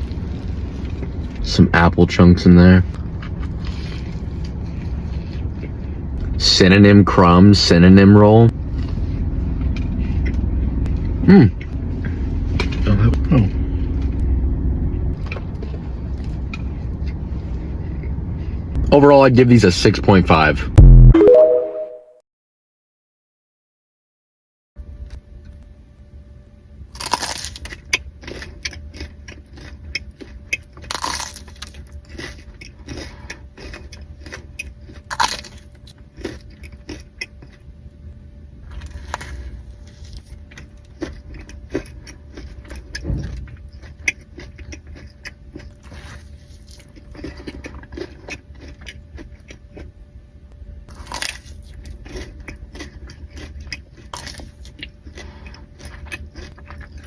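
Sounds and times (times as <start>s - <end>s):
person chewing donuts: 2.9s - 6.4s, 8.5s - 18.8s, 27.0s - 38.0s, 38.6s - 50.0s, 50.9s - 57.0s.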